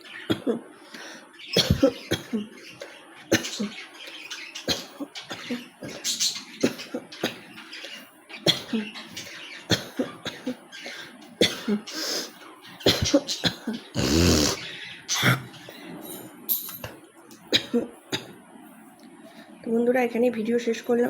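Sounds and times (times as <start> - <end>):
person clearing throat: 1.6 - 2.4, 12.9 - 14.6
person coughing: 1.6 - 2.4, 12.9 - 14.6.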